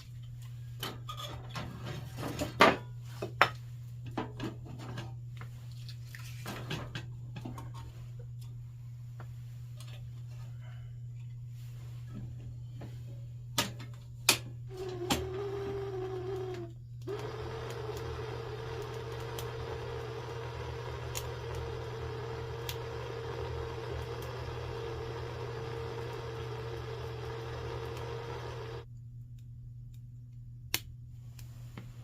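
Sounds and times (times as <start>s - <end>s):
small electric motor whine: 14.7s - 28.8s.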